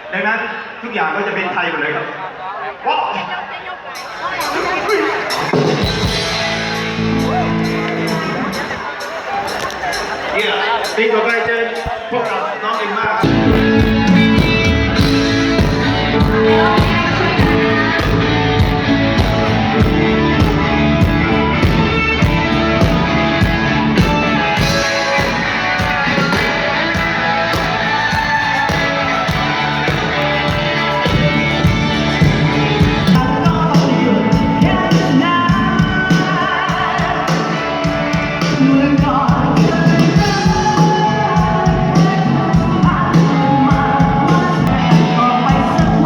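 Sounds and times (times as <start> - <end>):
guitar: 4.0 - 10.9, 12.8 - 46.0
drum beat: 13.2 - 46.0
person singing: 13.2 - 46.0.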